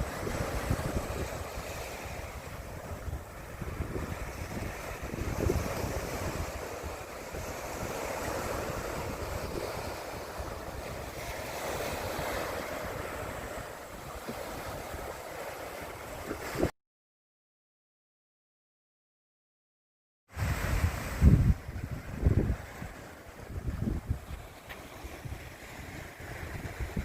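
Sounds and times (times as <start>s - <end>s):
ocean surf washing in: 0.0s - 16.7s, 20.3s - 27.0s
wind buffeting microphone: 0.0s - 16.7s, 20.3s - 27.0s.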